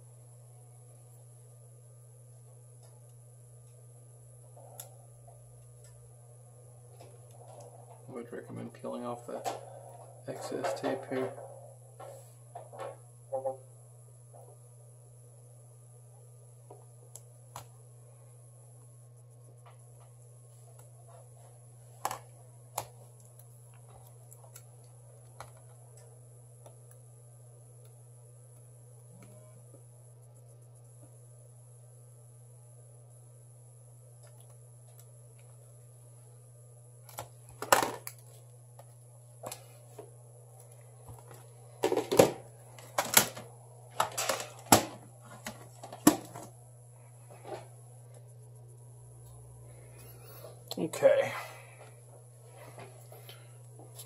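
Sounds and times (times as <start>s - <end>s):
steady low hum: 0.0s - 54.0s
tools and phone handled on workbench: 37.1s - 46.6s.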